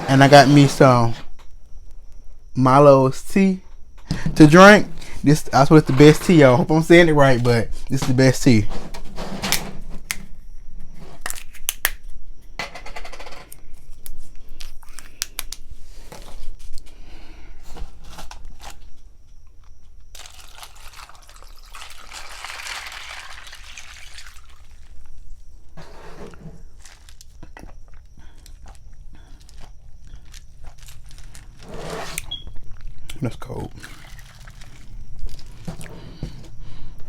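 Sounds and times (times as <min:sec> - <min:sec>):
clicks and crinkling of drink handling: 0:12.8 - 0:17.0, 0:17.7 - 0:36.6
liquid pouring: 0:20.2 - 0:25.0, 0:33.5 - 0:35.0.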